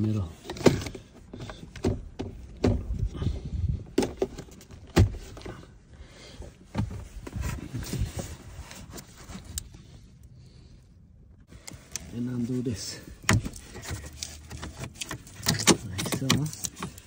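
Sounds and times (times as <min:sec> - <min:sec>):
rustling: 0:06.6 - 0:10.2.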